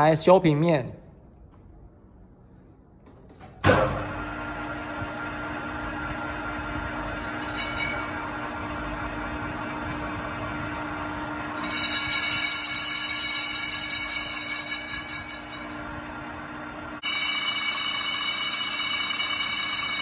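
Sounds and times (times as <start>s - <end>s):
metal lathe humming: 4.1s - 20.0s.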